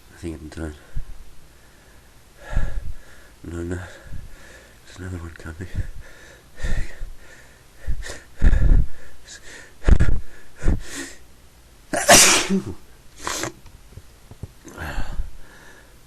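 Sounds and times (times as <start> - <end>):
person sneezing: 12.0 - 13.6.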